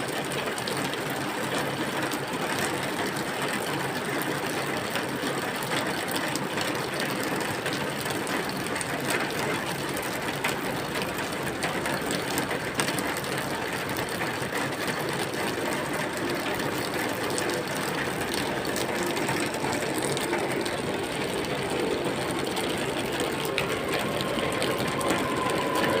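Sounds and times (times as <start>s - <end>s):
rain falling steadily: 0.0s - 26.0s.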